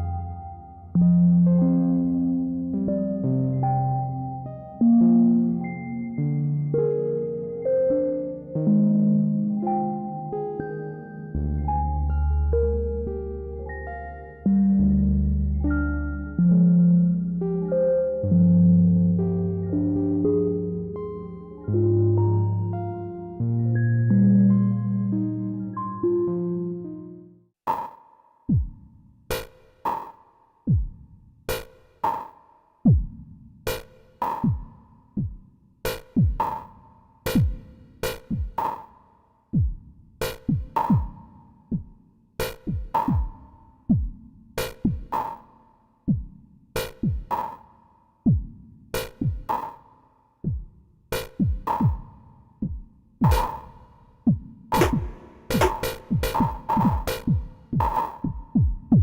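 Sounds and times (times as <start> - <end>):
electronic kick drums: 28.5 - 28.9, 30.7 - 31.0, 32.9 - 33.2, 34.4 - 36.6, 37.3 - 38.6, 39.6 - 45.1, 46.1 - 47.4, 48.3 - 49.6, 50.4 - 53.7, 54.3 - 59.0.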